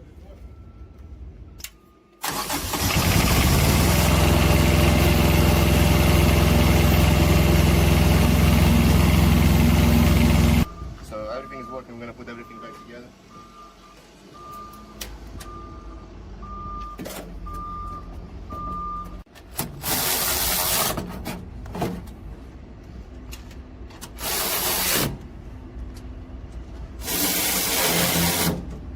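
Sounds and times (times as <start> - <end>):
reversing alarm beeping: 0.3 - 2.2, 10.6 - 19.2
low engine hum: 3.0 - 11.1
loud bursts of hissing air: 19.8 - 21.0, 24.2 - 25.2, 27.0 - 28.7.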